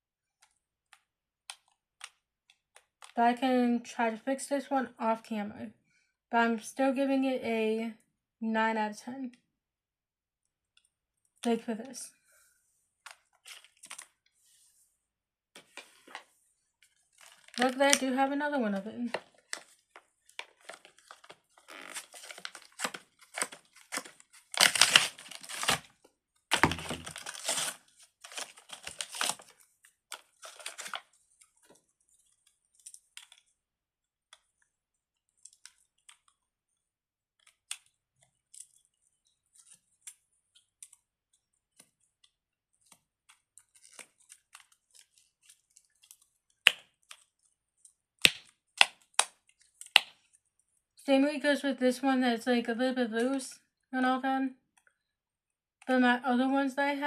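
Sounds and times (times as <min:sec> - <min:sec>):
plastic packaging crinkling and tearing: 0:13.1 - 0:14.2, 0:16.8 - 0:18.3, 0:19.0 - 0:33.5, 0:35.3 - 0:36.4, 0:42.8 - 0:50.4.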